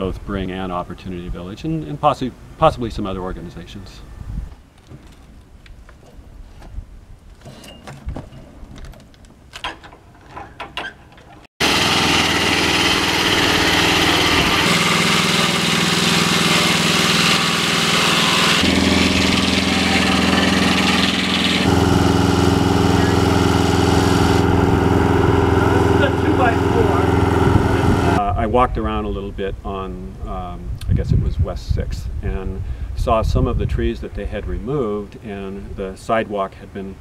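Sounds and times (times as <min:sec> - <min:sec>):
engine-powered sawmill running: 0:11.6 - 0:28.2.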